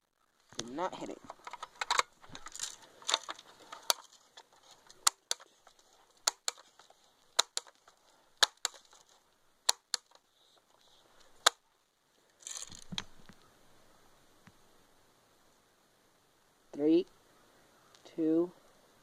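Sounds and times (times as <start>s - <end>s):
air rifle pumping clicks: 1.3s - 11.6s.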